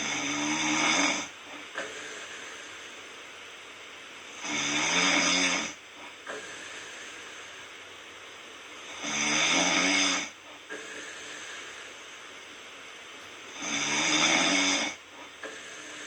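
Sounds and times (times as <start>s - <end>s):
person snoring: 0.0s - 1.3s, 4.4s - 5.8s, 8.9s - 10.4s, 13.5s - 16.0s.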